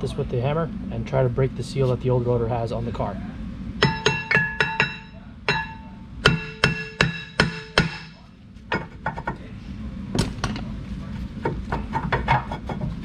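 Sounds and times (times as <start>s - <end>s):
hammer striking metal rotor: 3.8s - 8.2s.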